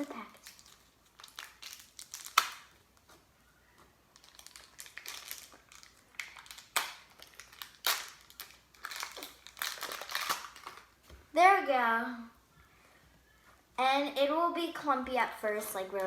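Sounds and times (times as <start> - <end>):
plastic packaging crinkling: 0.1 - 3.1, 4.1 - 11.0.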